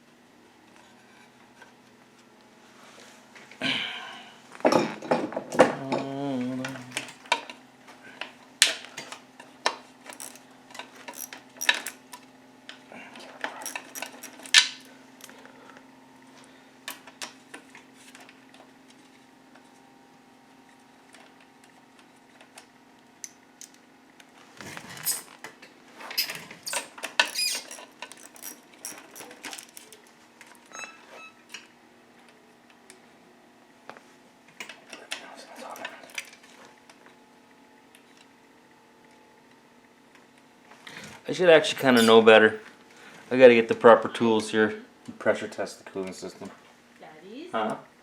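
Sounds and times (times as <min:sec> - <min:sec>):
steady low hum: 0:00.0 - 0:20.3
hand tools clanking on metal: 0:10.1 - 0:10.4, 0:11.1 - 0:12.0, 0:13.4 - 0:14.9, 0:26.2 - 0:30.0, 0:41.7 - 0:42.3.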